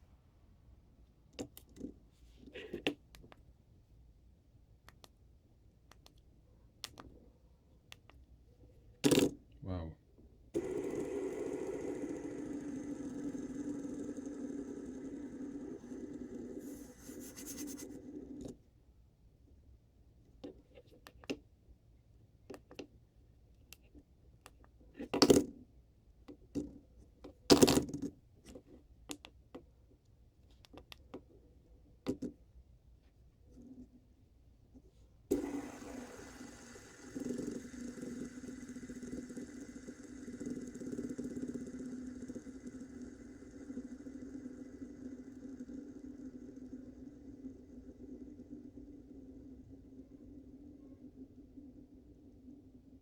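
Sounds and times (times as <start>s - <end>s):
fidget spinner whirring: 10.6s - 18.6s, 35.3s - 53.0s.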